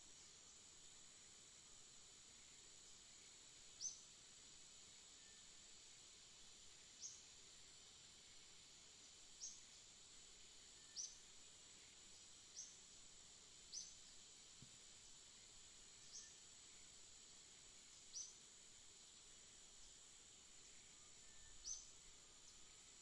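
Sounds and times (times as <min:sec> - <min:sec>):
faint high-pitched hiss: 0:00.0 - 0:23.0
small bird chirping: 0:10.8 - 0:11.2, 0:13.7 - 0:14.0, 0:18.0 - 0:18.4, 0:21.2 - 0:22.7
faint high-pitched ring: 0:20.6 - 0:22.0.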